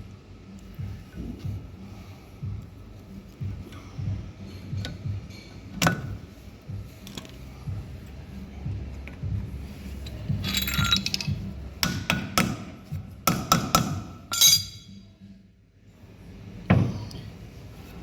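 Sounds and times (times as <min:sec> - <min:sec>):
metal tools clinking on metal: 0:10.3 - 0:11.5, 0:14.3 - 0:15.0.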